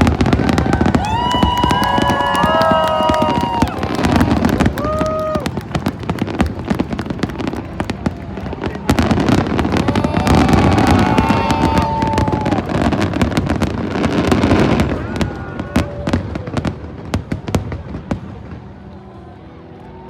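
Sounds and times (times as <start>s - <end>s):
fireworks bangs and crackling: 0.0s - 19.1s.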